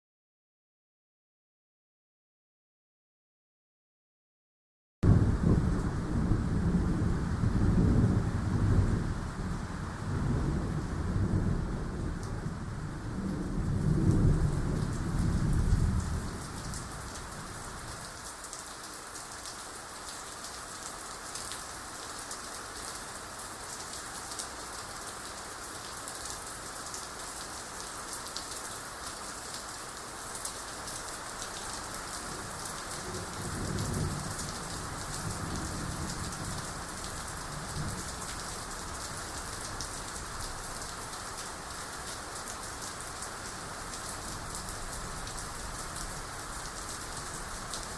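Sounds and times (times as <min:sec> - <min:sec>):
low rumble of thunder: 0:05.0 - 0:18.0, 0:32.3 - 0:40.3
heavy rain: 0:05.0 - 0:47.9.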